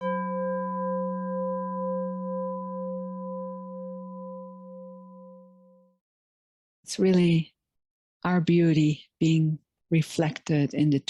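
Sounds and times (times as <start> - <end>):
singing bowl ringing: 0.0 - 6.0.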